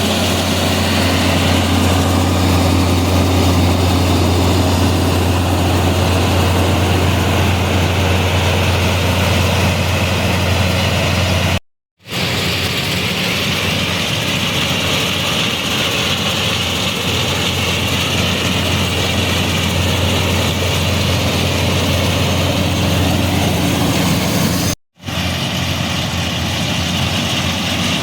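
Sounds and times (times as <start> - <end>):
combine harvester running: 0.0 - 28.0.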